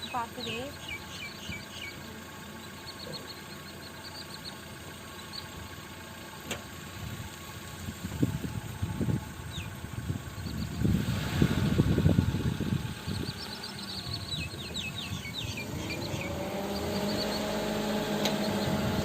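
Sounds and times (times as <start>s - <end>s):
bird chirping: 0.0s - 5.7s, 8.5s - 11.0s, 11.8s - 19.0s
car engine note: 0.0s - 19.0s
car road noise rumbling: 0.0s - 19.0s.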